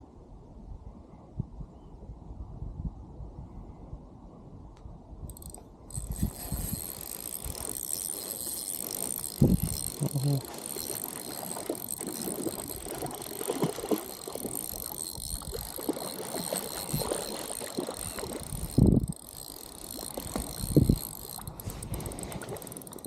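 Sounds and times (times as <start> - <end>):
fishing reel cranking: 5.3 - 23.0.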